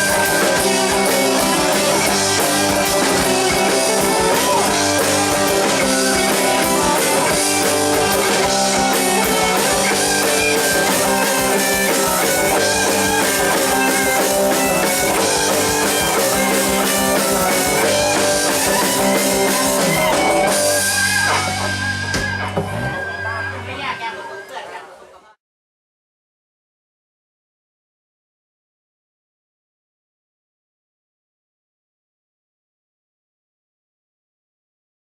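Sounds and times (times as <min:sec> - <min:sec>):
drum kit with cymbals: 0:00.0 - 0:24.2
bass guitar: 0:00.0 - 0:24.6
lead guitar: 0:00.0 - 0:25.2.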